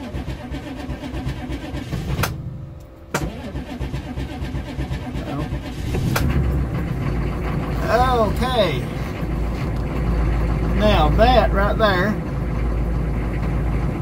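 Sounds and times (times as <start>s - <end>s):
diesel engine starting up: 0.0s - 14.0s.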